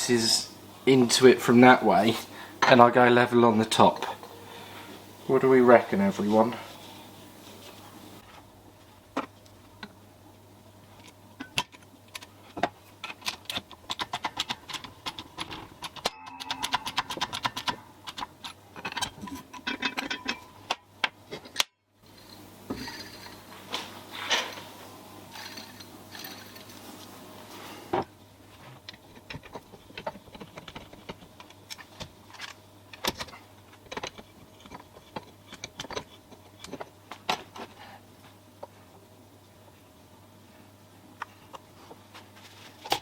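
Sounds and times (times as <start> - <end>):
faint steady hum: 0.0 - 43.0
small metal parts clinking: 25.3 - 26.8.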